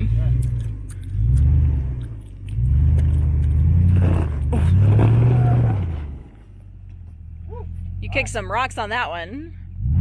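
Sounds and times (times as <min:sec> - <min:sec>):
engine revving under load: 0:00.0 - 0:06.6, 0:09.7 - 0:10.0.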